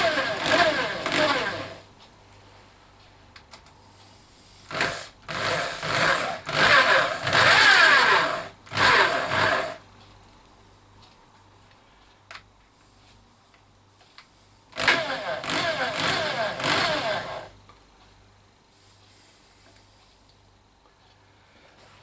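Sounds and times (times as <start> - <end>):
drill motor spinning: 0.0 - 1.8, 4.7 - 9.8, 14.8 - 17.6.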